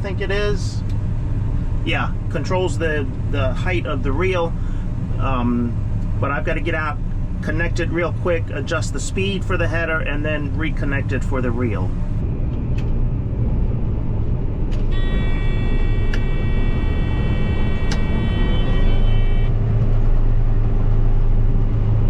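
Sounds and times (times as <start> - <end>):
combine engine rumbling: 0.0 - 22.0
high buzzing tone: 14.9 - 19.6
sharp clicks: 17.9 - 18.2.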